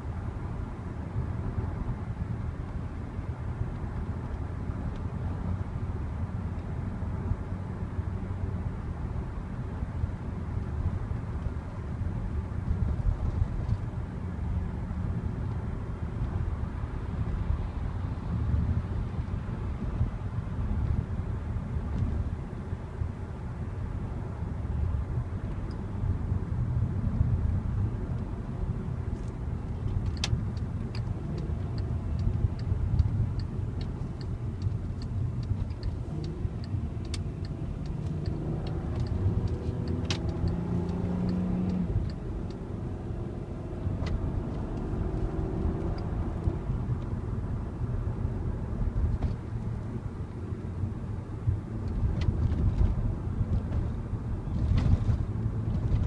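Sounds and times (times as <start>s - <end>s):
road rumble: 0.0s - 56.0s
car engine accelerating: 27.7s - 49.9s
sharp clicks: 29.2s - 42.6s
faint regular ticking: 30.1s - 42.6s.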